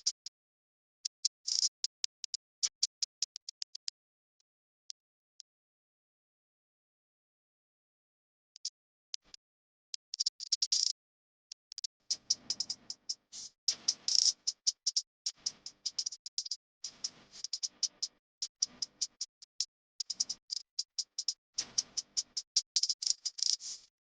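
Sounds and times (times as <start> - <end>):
rapid sharp clicking and tapping: 13.7 - 23.7.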